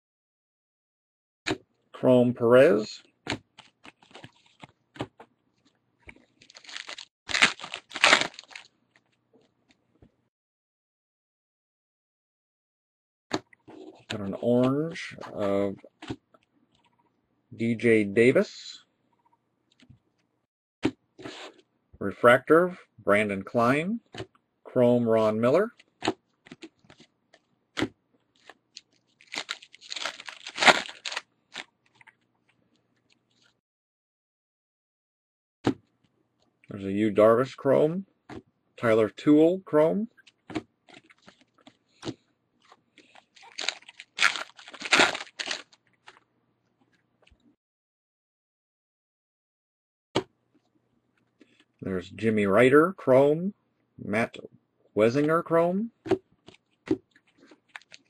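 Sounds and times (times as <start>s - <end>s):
cards clicking and rustling: 3.3s - 5.3s, 6.1s - 9.8s, 25.8s - 32.2s, 40.3s - 42.2s, 43.0s - 46.2s, 56.1s - 58.0s
foil wrapper crinkling: 3.5s - 4.7s, 6.4s - 9.2s, 28.3s - 32.2s, 40.3s - 41.8s, 42.6s - 46.2s, 56.5s - 58.0s.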